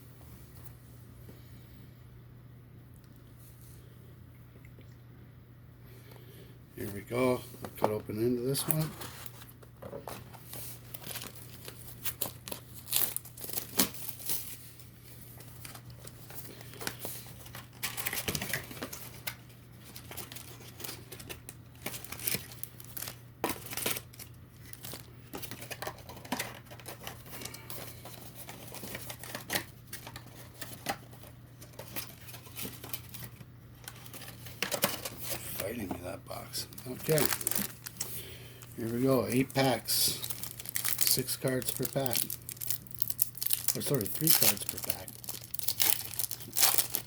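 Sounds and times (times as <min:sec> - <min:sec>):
low electrical hum: 0:00.0 - 0:47.0
plastic wrap crinkling and tearing: 0:08.5 - 0:47.0.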